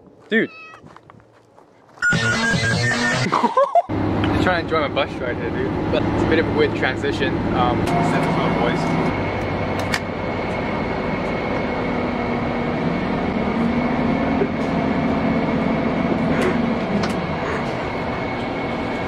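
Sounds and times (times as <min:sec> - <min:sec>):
vehicle cabin rumble: 0:04.0 - 0:19.0.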